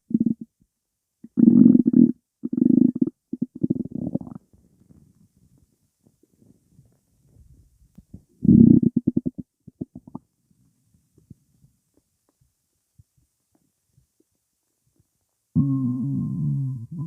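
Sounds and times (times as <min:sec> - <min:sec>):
stomach rumbling and gurgling: 0:01.2 - 0:11.8.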